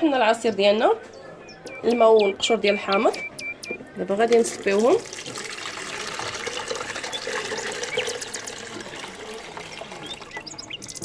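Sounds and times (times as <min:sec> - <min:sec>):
liquid pouring through strainer: 0:04.5 - 0:10.8.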